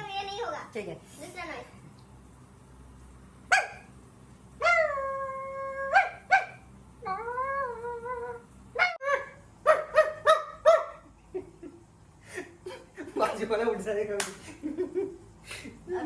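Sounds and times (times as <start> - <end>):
person imitating a dog: 4.6 - 6.2, 7.0 - 9.5.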